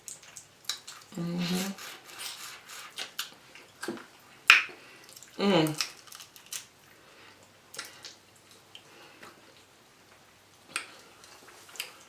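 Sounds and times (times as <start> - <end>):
person chewing food: 10.6 - 12.0.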